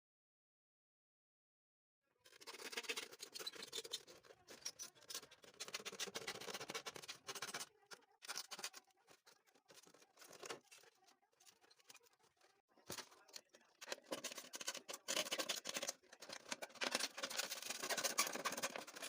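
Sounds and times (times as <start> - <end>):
plastic bottle being cut: 13.8 - 19.0.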